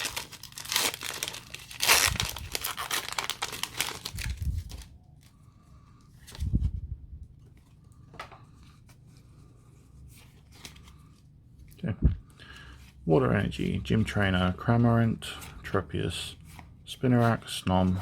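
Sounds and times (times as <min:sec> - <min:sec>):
foil wrapper tearing and crinkling: 0:00.0 - 0:04.9.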